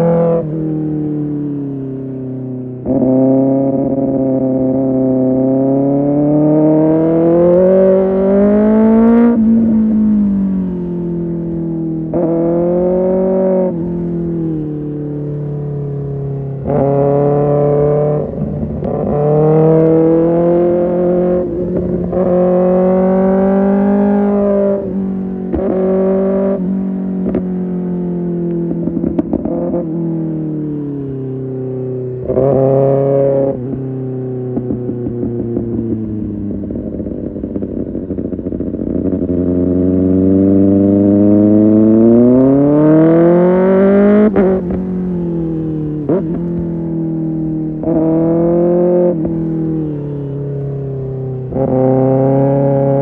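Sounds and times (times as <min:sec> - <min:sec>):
motorcycle engine revving: 0:00.0 - 0:53.0.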